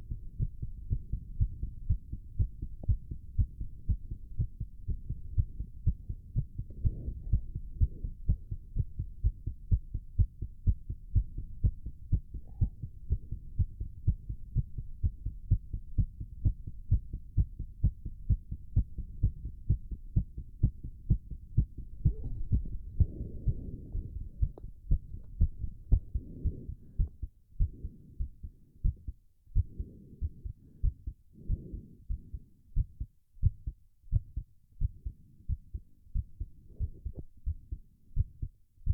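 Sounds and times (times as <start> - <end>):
fast heartbeat: 0.0 - 38.9
heavy breathing: 22.0 - 29.0, 29.6 - 32.6.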